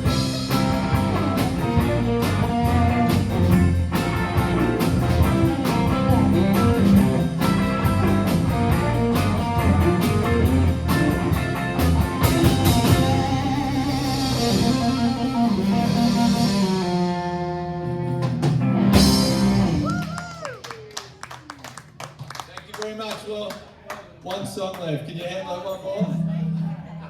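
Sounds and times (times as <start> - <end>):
live rock band playing: 0.0 - 20.5.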